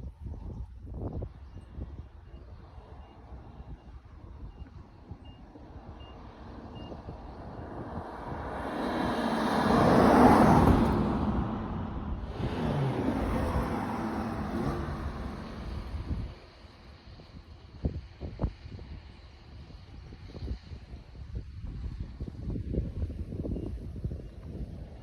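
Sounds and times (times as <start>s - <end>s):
car engine pulling hard: 5.7s - 17.0s.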